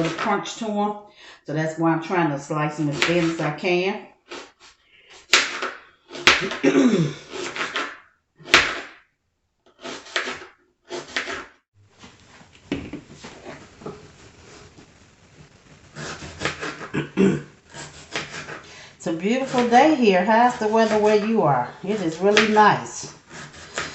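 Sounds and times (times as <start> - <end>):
knife slicing carrots: 2.9 - 3.5, 5.1 - 6.6, 7.2 - 8.9, 9.8 - 11.5, 17.7 - 18.7, 19.3 - 23.9
faint steady hiss: 11.8 - 23.9.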